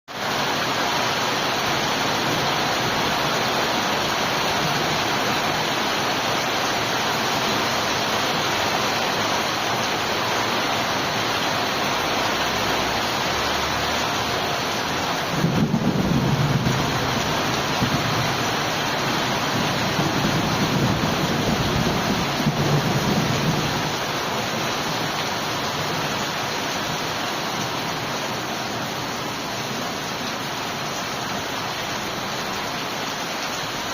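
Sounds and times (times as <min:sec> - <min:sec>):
heavy rainfall: 0:00.1 - 0:33.9
thunder rumbling: 0:15.1 - 0:25.0.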